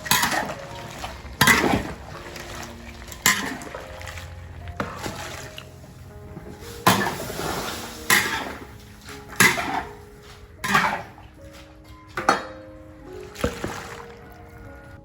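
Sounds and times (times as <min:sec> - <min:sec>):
metal utensil clanking on pot: 0:00.0 - 0:02.0, 0:03.1 - 0:03.8, 0:08.0 - 0:10.0, 0:10.6 - 0:11.2.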